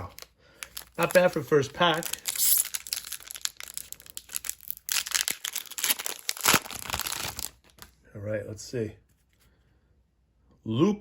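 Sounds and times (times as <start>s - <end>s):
plastic wrapper crinkling and tearing: 0.0s - 8.0s.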